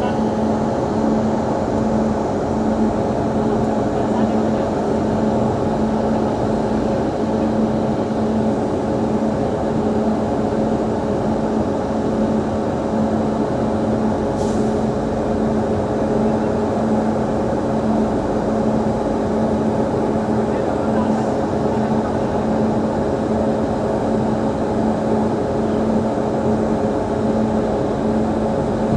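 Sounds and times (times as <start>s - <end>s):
electric locomotive hum: 0.0s - 28.9s.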